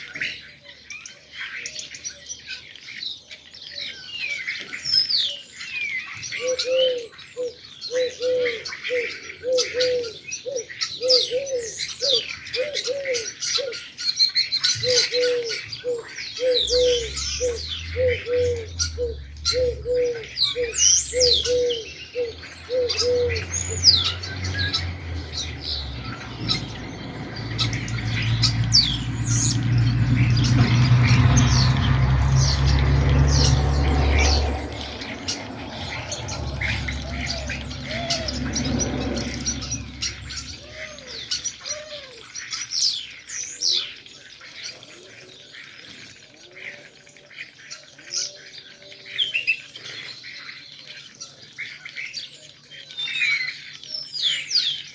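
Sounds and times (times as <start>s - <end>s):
sparrows chirping: 0.0s - 54.9s
pigeons cooing: 6.0s - 42.6s
low steady rumble: 23.3s - 41.4s.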